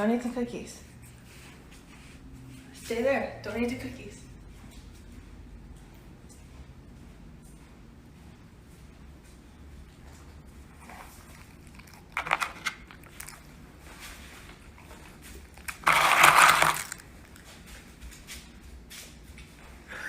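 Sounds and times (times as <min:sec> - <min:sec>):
dog crunching cookies: 0:10.6 - 0:18.7
loud crinkling: 0:10.8 - 0:17.7.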